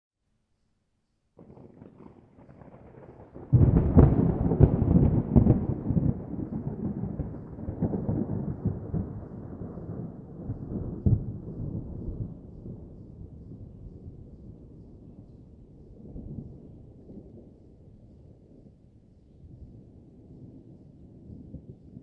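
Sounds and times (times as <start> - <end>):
thunder rumbling and cracking: 1.4 - 18.8.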